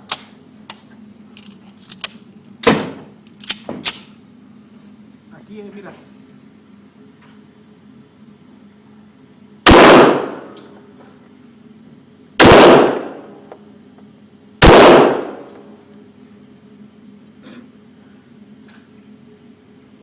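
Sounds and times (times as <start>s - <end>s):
handgun shots echoing indoors: 9.7s - 10.7s, 12.4s - 13.5s, 14.6s - 15.8s.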